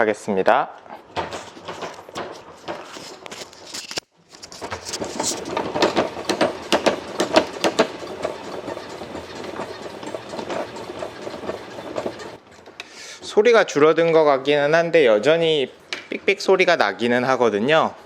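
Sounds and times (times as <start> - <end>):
exercise bike crank clicking and squeaking: 4.4 - 13.8.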